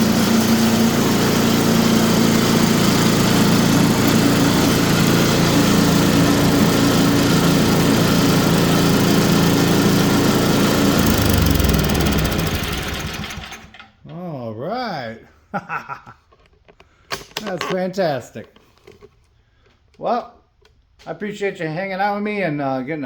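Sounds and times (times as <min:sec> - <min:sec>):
snowblower engine running: 0:00.0 - 0:13.8.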